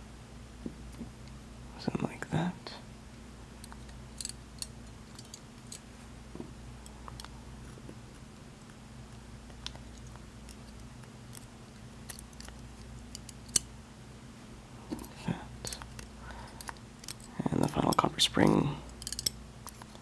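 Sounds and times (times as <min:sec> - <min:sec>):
steady low hum: 0:00.0 - 0:20.0
small metal parts clicking: 0:03.6 - 0:05.8, 0:09.9 - 0:13.7, 0:15.6 - 0:20.0.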